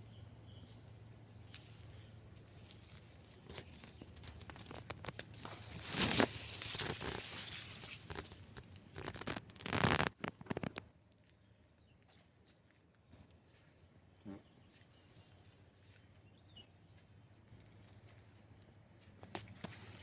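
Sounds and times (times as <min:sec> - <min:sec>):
crackling clicks: 0:03.4 - 0:10.9.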